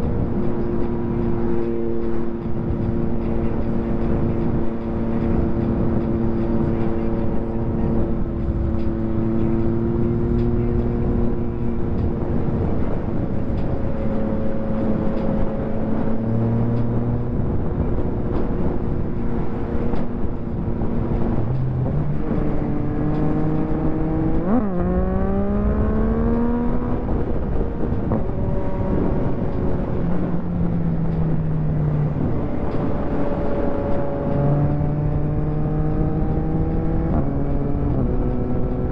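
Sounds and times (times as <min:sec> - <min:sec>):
wind noise: 0:00.0 - 0:38.9
motorcycle engine: 0:13.4 - 0:38.9.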